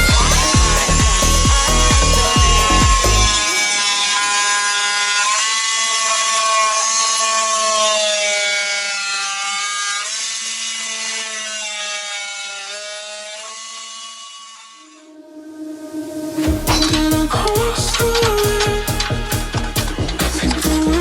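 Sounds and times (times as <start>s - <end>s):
held synth chords: 0.0s - 4.6s, 15.0s - 21.0s.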